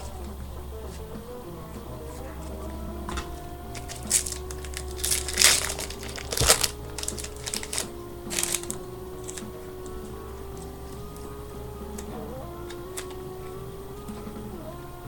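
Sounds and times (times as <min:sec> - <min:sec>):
cards being handled: 0:03.1 - 0:11.2, 0:12.0 - 0:13.3
foil wrapper crinkling and tearing: 0:03.7 - 0:09.5.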